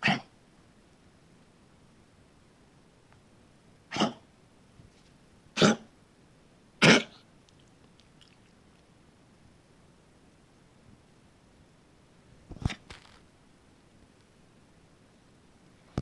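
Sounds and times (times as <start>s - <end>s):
harsh hacking coughs: 3.9s - 4.2s, 5.6s - 5.9s, 6.8s - 7.2s.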